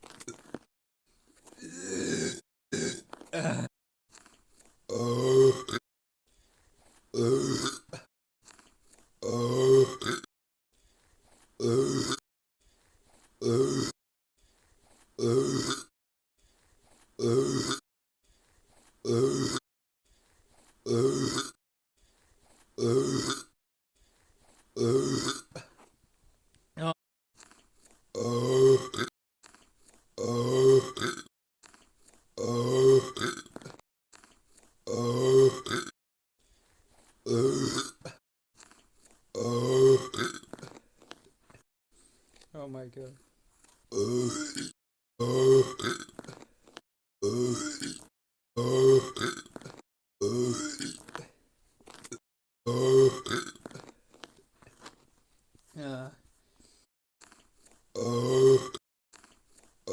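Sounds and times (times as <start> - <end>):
person burping: 1.6 - 3.8, 4.9 - 5.8, 7.1 - 8.1, 9.2 - 10.3, 11.6 - 12.2, 13.4 - 14.0, 15.2 - 15.9, 17.2 - 17.8, 19.0 - 19.6, 20.8 - 21.6, 22.8 - 23.6, 24.8 - 25.8, 28.2 - 29.1, 30.2 - 31.3, 32.4 - 33.8, 34.8 - 36.0, 37.2 - 38.2, 39.4 - 40.8, 43.9 - 46.5, 47.2 - 51.4, 52.1 - 53.9, 58.0 - 58.8.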